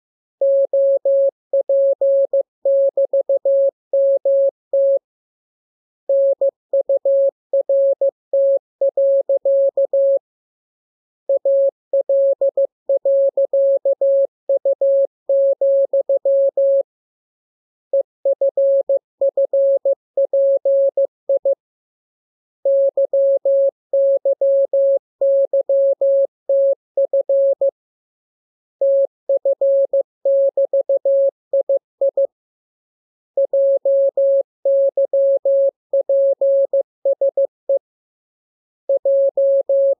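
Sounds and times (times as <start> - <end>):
morse code beeps: 0.4 - 5.0, 22.7 - 27.7, 28.8 - 32.3, 33.4 - 37.8, 38.9 - 39.9.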